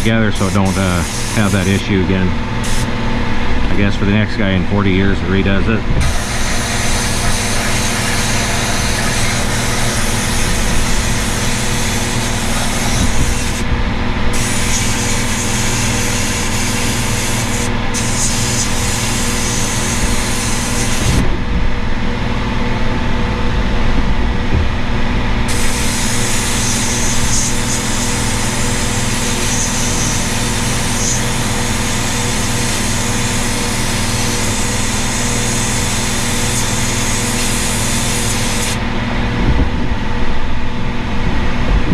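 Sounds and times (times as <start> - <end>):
sandblaster spraying hiss: 0.0 - 1.9, 2.6 - 2.9, 6.0 - 13.6, 14.4 - 21.2, 25.5 - 38.8
motor hum: 0.0 - 41.9.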